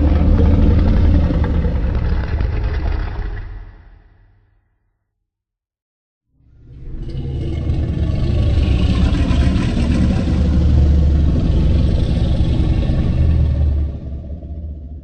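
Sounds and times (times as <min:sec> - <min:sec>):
deep rumbling roar: 0:00.0 - 0:04.4, 0:06.4 - 0:15.0.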